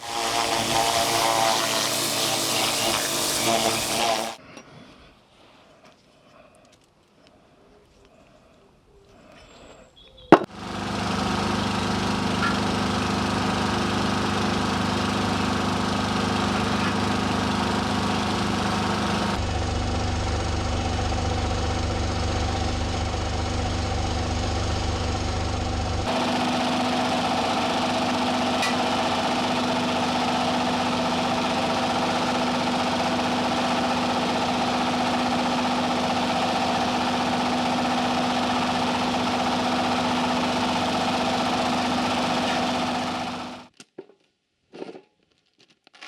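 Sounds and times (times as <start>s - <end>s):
loud even hiss: 0.0s - 4.4s
machine motor hum: 0.0s - 4.4s, 10.4s - 43.7s
steady machine noise: 0.0s - 4.4s, 10.5s - 43.7s.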